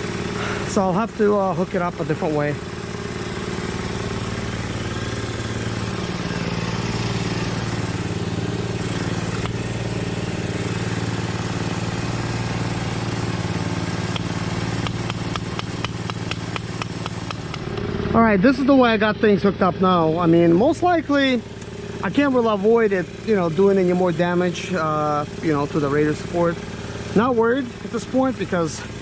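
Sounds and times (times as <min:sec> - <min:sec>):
small engine idling: 0:00.0 - 0:29.0
sharp metallic clicks: 0:09.0 - 0:09.6, 0:14.0 - 0:17.9.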